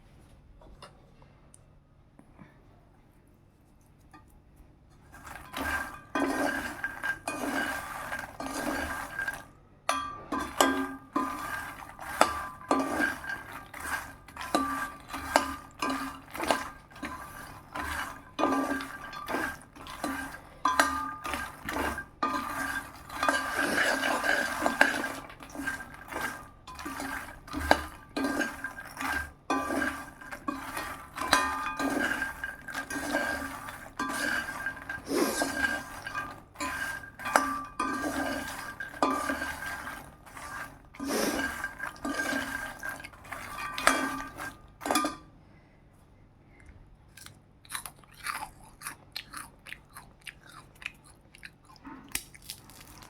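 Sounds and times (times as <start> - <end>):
metal spoon scraping metal pan: 5.0 - 45.3.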